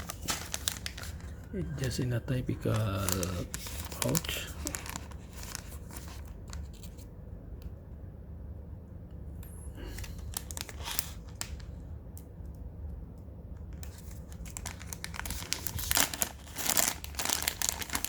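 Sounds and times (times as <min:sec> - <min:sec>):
packaging pouch tearing and crinkling: 0:00.0 - 0:02.0, 0:02.6 - 0:07.0, 0:09.8 - 0:11.7, 0:13.8 - 0:18.0.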